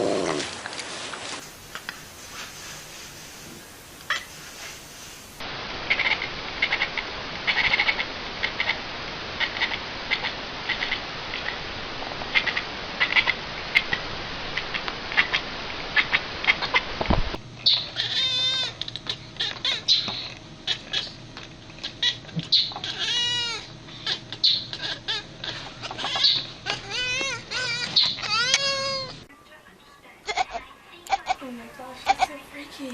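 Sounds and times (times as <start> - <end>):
steady hiss: 0.0 - 19.4, 30.9 - 32.9
cat chirping and squawking: 4.1 - 4.7, 5.9 - 8.8, 9.4 - 11.6, 12.3 - 16.9, 17.6 - 29.3, 30.3 - 31.4.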